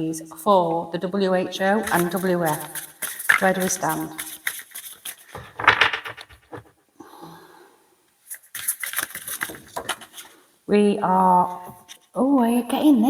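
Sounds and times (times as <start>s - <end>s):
cards being shuffled: 1.8s - 6.7s, 8.3s - 10.4s.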